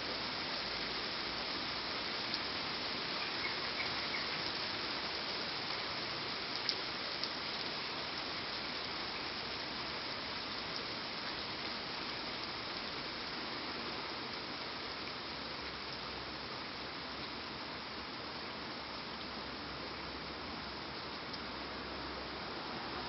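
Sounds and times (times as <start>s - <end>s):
steady rain falling: 0.0s - 23.0s.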